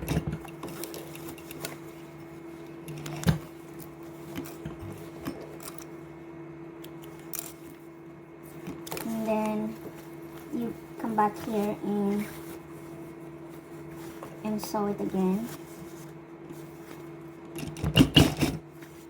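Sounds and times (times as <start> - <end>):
steady low hum: 0.0 - 19.0
jacket fabric rustling: 7.2 - 17.4.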